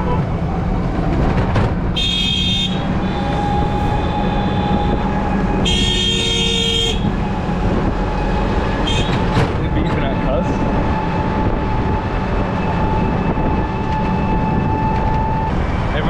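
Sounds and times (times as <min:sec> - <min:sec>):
traffic rumble: 0:00.0 - 0:16.0
vehicle horns honking: 0:02.0 - 0:07.2, 0:08.8 - 0:09.4.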